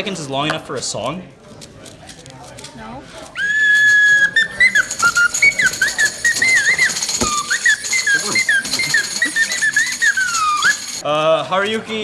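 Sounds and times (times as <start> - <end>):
person whistling a tune: 3.4 - 11.0.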